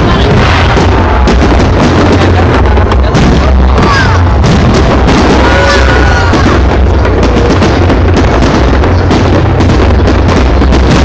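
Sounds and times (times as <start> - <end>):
deep rumble: 0.0 - 11.0
fireworks bangs and crackles: 0.0 - 11.0.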